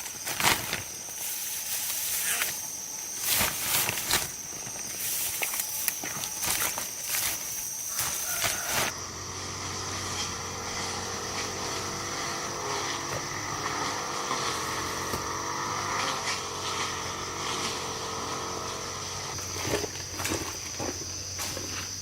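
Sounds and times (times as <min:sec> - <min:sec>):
small engine running: 0:08.0 - 0:19.9.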